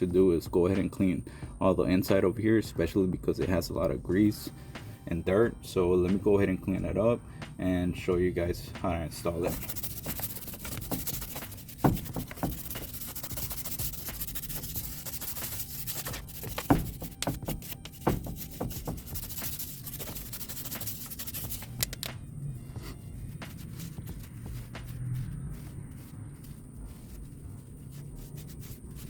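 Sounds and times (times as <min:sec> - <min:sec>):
wire brush scrubbing metal: 0:09.4 - 0:22.1, 0:22.7 - 0:29.0
sharp knocks: 0:10.9 - 0:12.9, 0:16.1 - 0:19.2.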